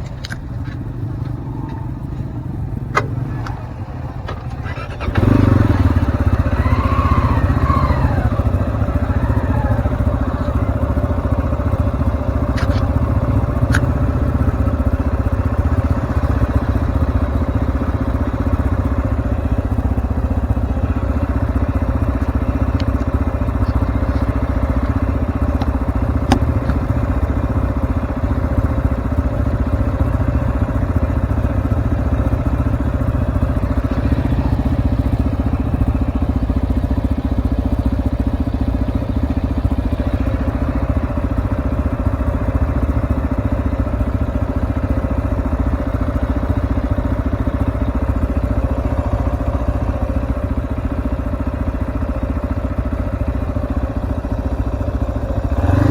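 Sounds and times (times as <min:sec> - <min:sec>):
motorcycle engine running: 0:00.0 - 0:55.9
sharp clicks: 0:12.3 - 0:14.3.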